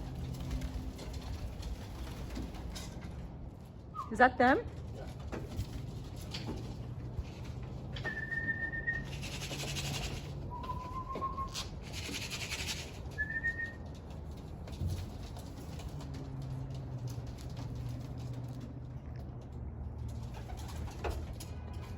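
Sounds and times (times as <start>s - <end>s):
person whistling notes: 10.5s - 11.6s
rapid fluttering: 11.8s - 13.1s.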